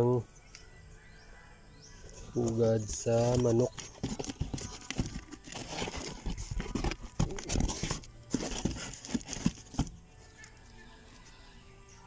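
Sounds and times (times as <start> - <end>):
rustling and knocking of nests: 2.0 - 10.4.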